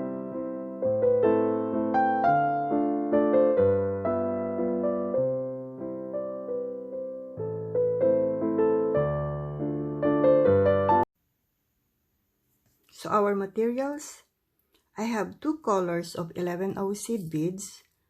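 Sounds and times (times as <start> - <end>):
gentle piano melody: 0.0 - 11.1.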